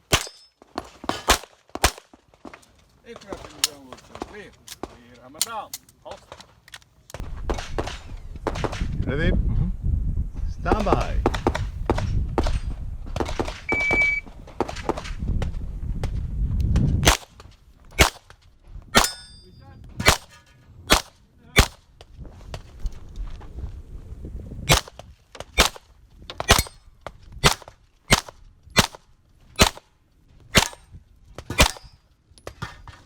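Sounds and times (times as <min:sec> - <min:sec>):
pistol shots: 0:17.0 - 0:17.3, 0:18.0 - 0:18.2, 0:19.0 - 0:19.3, 0:20.0 - 0:20.3, 0:20.9 - 0:21.8, 0:24.7 - 0:24.9, 0:25.6 - 0:25.8, 0:26.4 - 0:26.8, 0:27.4 - 0:29.0, 0:29.6 - 0:29.8, 0:30.5 - 0:30.8, 0:31.5 - 0:32.0.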